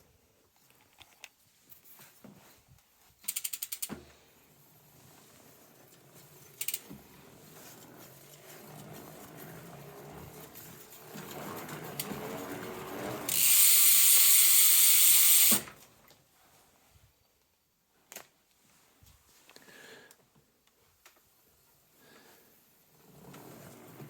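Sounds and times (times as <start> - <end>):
bicycle gearbox ratcheting whir: 3.2 - 3.9, 6.5 - 7.0, 7.7 - 15.7.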